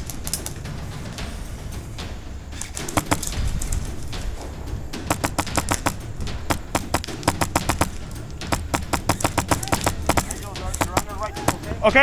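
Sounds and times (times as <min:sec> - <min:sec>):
airsoft guns firing: 0:02.6 - 0:12.0.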